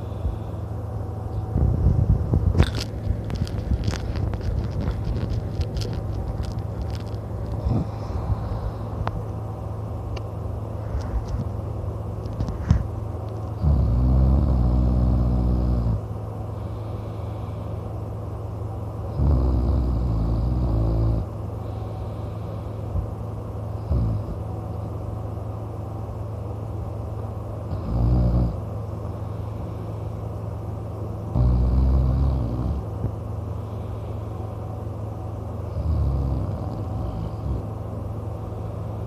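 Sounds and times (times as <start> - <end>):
steady low rumble: 0.0 - 39.0
man snoring loudly: 13.6 - 16.0, 19.1 - 21.3, 23.8 - 24.4, 27.7 - 28.6, 31.3 - 32.8, 35.7 - 37.7.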